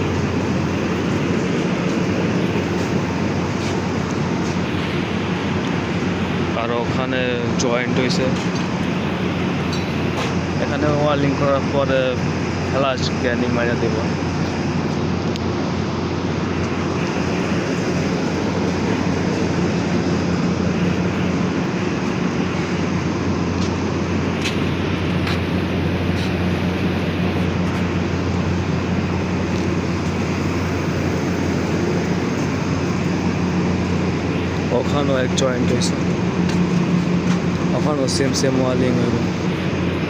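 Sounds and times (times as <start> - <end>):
factory machinery drone: 0.0 - 40.0.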